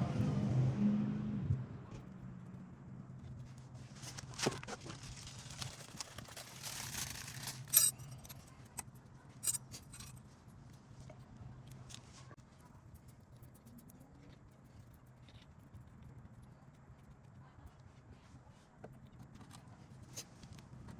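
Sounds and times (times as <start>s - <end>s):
metal parts clinking and scraping: 6.4s - 8.8s, 9.4s - 10.2s.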